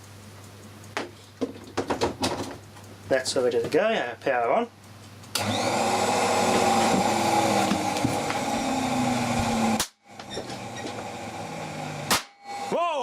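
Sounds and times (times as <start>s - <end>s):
transformer humming and buzzing: 5.3s - 13.0s.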